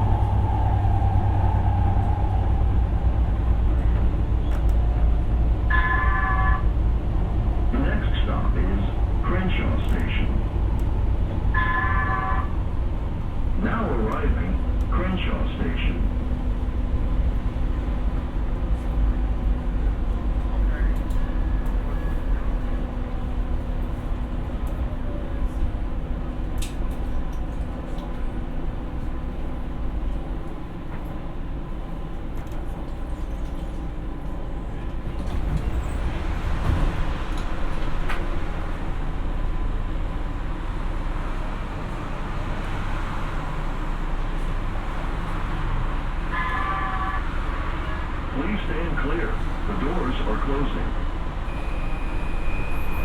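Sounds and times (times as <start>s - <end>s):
rumble of train wheels and motors: 0.0s - 53.0s
short beeps: 51.5s - 53.0s.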